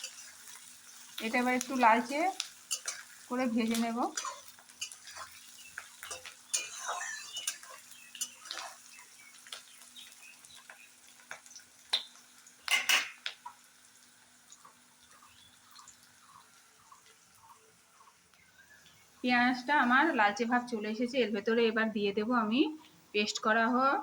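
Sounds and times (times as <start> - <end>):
spatula scraping a pan: 0.0 - 9.6
spatula clatter: 0.0 - 13.4.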